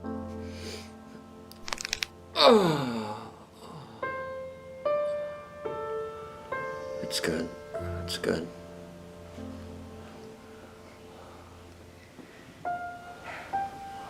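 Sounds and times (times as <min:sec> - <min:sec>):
soft piano music: 0:00.0 - 0:14.0
back cracking pops: 0:01.5 - 0:02.2
man groaning: 0:02.4 - 0:04.0.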